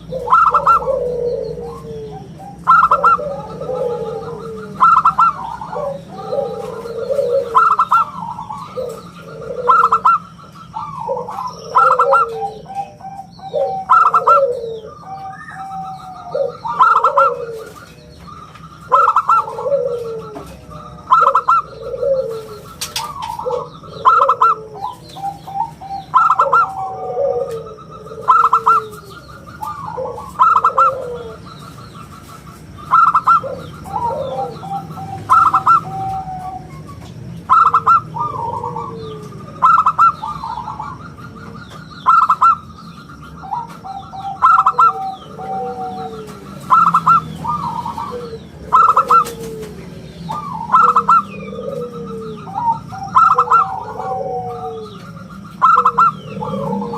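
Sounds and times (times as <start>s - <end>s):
dove cooing: 0.0s - 56.9s
small birds chirping: 0.0s - 56.9s.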